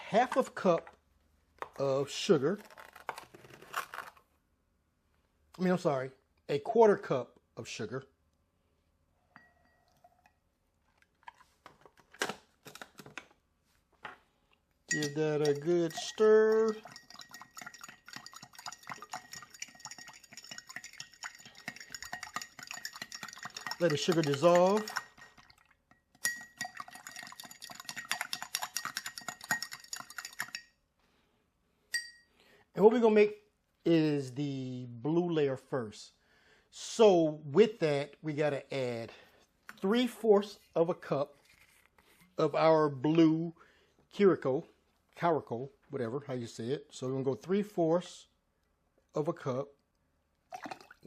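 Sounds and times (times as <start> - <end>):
spoon clinking while stirring: 14.9 - 30.7.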